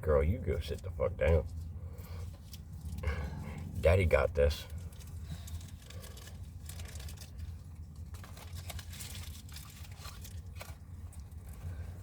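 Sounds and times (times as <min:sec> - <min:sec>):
steady low hum: 0:00.0 - 0:12.0
small items crinkling and clicking: 0:04.6 - 0:11.7.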